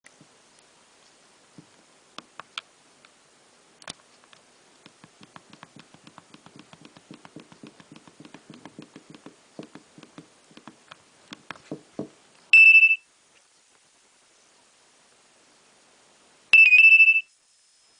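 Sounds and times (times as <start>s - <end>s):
faint clicks and taps: 3.8s - 12.2s
mobile phone beep: 12.5s - 13.0s, 16.6s - 17.4s.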